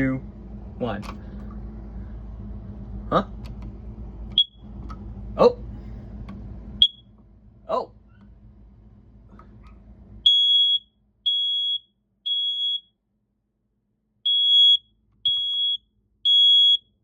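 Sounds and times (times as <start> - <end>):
smoke alarm beeping: 4.4 - 4.6, 6.8 - 7.1, 10.2 - 13.0, 14.3 - 17.0.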